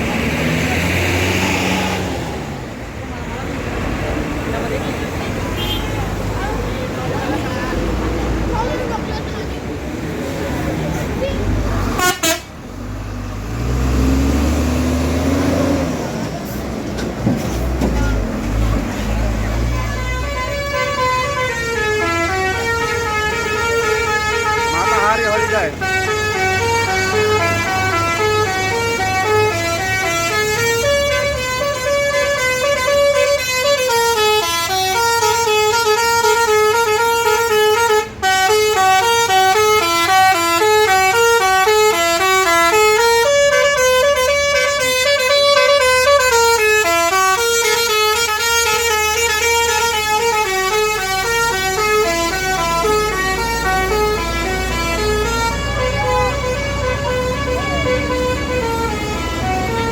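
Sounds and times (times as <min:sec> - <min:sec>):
bus musical horn tune: 0:05.6 - 0:06.0, 0:11.9 - 0:12.8, 0:19.5 - 0:59.9.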